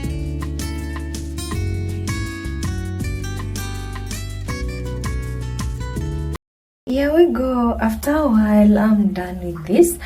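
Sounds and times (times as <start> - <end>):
strummed acoustic guitar music: 0.0 - 6.4.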